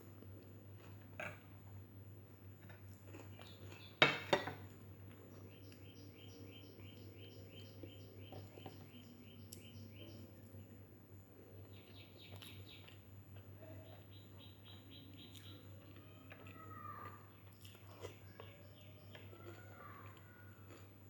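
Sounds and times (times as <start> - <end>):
low steady hum: 0.0 - 21.0
bird chirping: 3.2 - 4.1, 5.3 - 10.8, 11.5 - 20.5.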